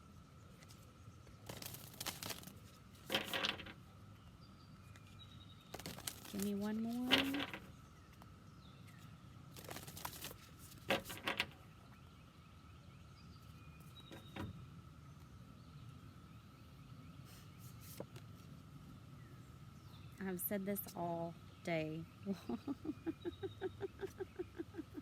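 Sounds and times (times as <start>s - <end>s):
cards rustling: 1.5s - 3.6s, 5.7s - 7.6s, 9.6s - 11.2s.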